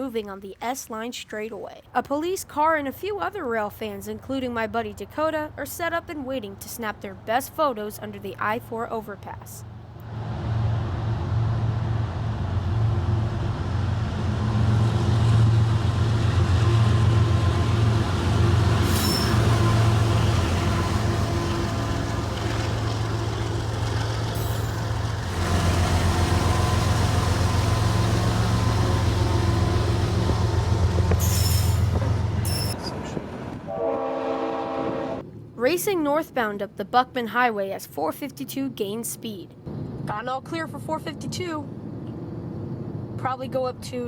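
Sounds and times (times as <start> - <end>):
locomotive engine throbbing: 10.0 - 33.7.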